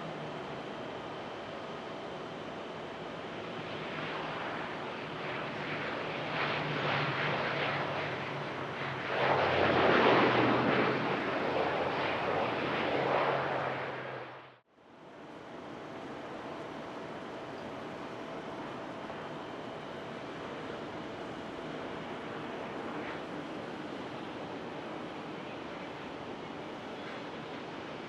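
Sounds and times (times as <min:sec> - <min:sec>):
airplane engine passing: 0:02.0 - 0:14.6, 0:16.3 - 0:28.0.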